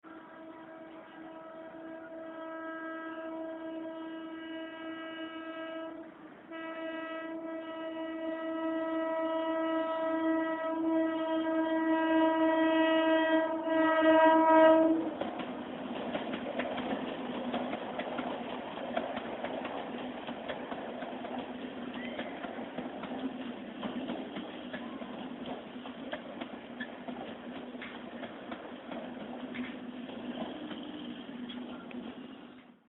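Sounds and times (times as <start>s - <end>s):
train horn: 0.0s - 15.3s
train rumble and wheel clatter: 0.1s - 32.9s.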